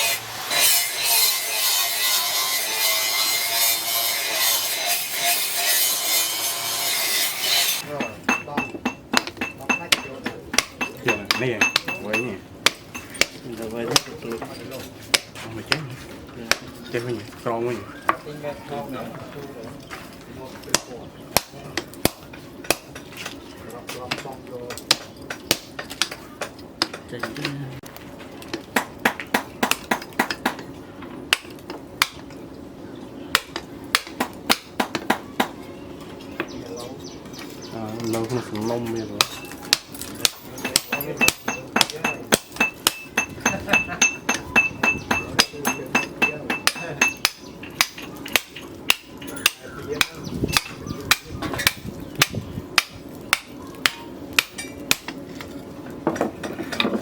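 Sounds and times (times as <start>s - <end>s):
hammer striking steel: 0.0s - 14.2s, 39.2s - 55.2s.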